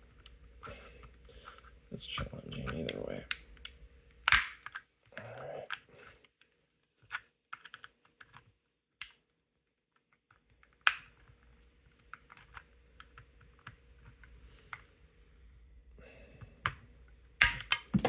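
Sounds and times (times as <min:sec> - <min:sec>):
sharp plastic snaps: 0:02.2 - 0:04.8, 0:09.0 - 0:09.3, 0:10.8 - 0:11.2, 0:17.4 - 0:18.0.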